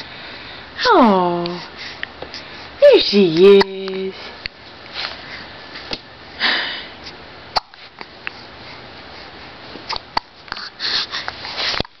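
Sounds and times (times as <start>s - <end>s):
breathy sniff: 10.6s - 11.8s.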